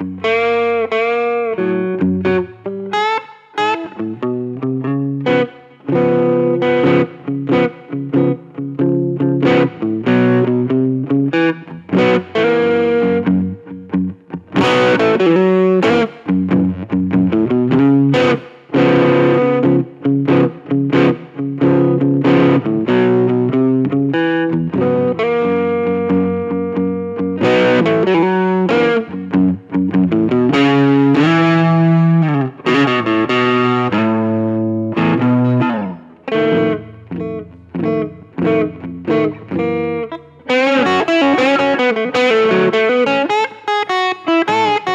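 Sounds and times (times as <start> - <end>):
distorted electric guitar: 0.0 - 44.9.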